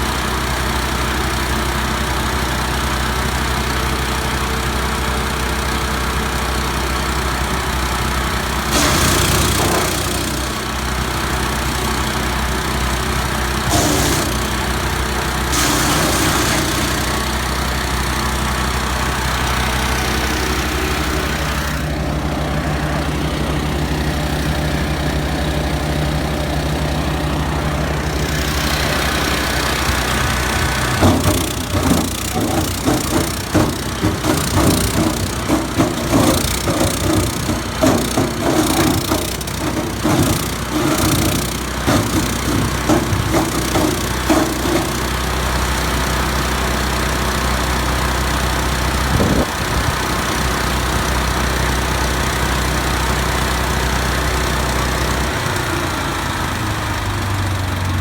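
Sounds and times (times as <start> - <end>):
petrol engine running: 0.0 - 58.0
wood cracking through cutter: 8.6 - 11.3, 13.5 - 18.4, 28.2 - 46.3.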